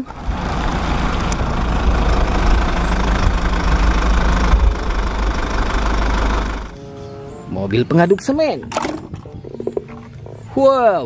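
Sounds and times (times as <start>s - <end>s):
truck engine idling: 0.0s - 6.7s.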